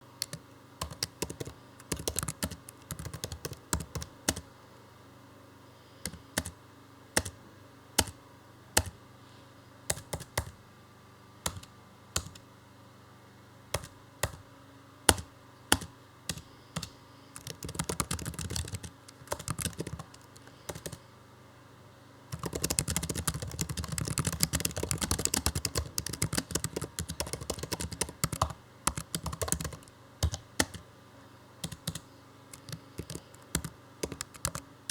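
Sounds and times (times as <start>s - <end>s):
computer keyboard typing: 0.2s - 4.4s, 6.0s - 6.6s, 7.2s - 7.4s, 8.0s - 8.2s, 8.8s - 9.0s, 9.9s - 10.6s, 11.4s - 12.4s, 13.8s - 14.4s, 15.1s - 21.0s, 22.3s - 30.8s, 31.6s - 34.9s.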